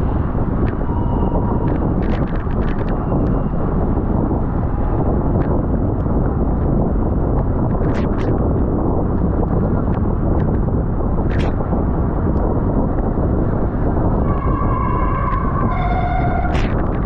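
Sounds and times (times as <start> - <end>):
wind rushing over microphone: 0.0 - 17.0
held high tone: 14.2 - 16.8.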